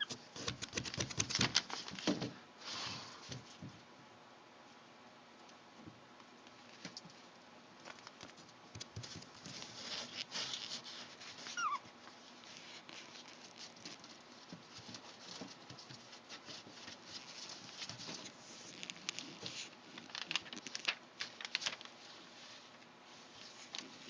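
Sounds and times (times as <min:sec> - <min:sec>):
puppies scratching and scuffling: 0:00.0 - 0:02.4, 0:07.8 - 0:24.0
puppy squeak: 0:11.6 - 0:11.8.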